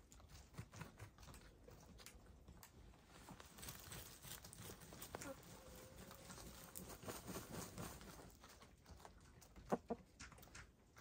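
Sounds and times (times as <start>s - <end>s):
hens scratching dirt: 0.0s - 11.0s.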